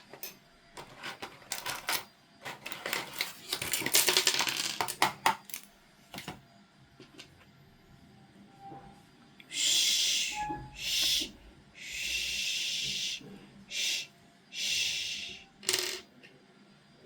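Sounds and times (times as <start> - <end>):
plastic toy pieces clicking: 1.5 - 5.7.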